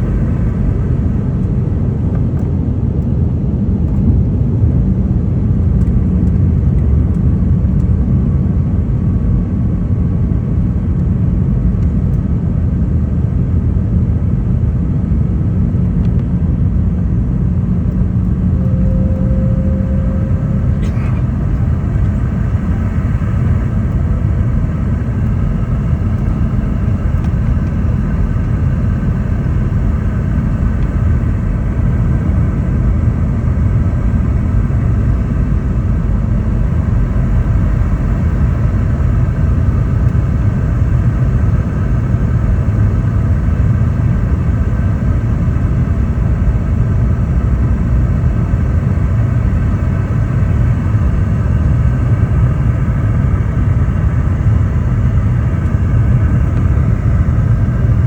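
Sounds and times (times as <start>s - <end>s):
airplane cabin engine rumble: 0.0s - 58.0s
low hum: 0.0s - 58.0s
short higher tone: 18.1s - 24.2s.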